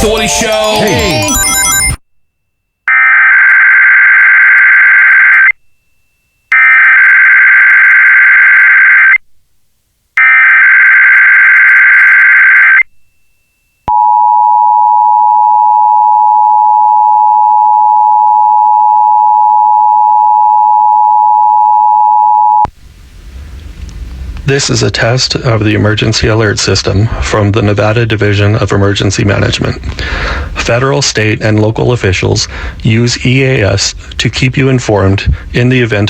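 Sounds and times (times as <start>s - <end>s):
two-tone attention signal: 0.0s - 2.0s
warbling digital data tones: 0.0s - 2.0s.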